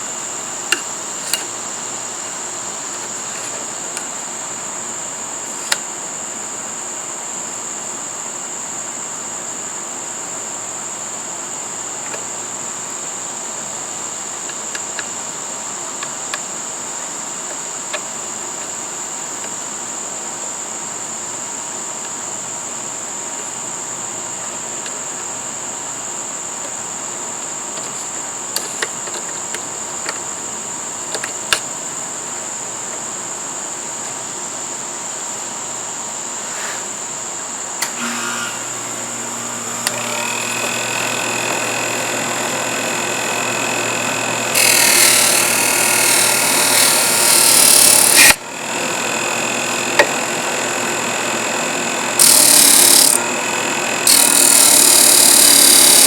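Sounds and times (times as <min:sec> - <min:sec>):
sander motor whining: 0:37.8 - 0:56.0
sharp ticks: 0:39.8 - 0:53.2, 0:54.0 - 0:56.0.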